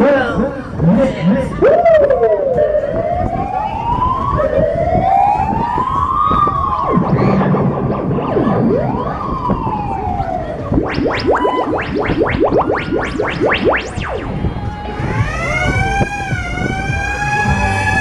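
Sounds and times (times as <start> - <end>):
siren-like wailing tone: 2.6 - 18.0
ride noise rushing: 6.5 - 17.0.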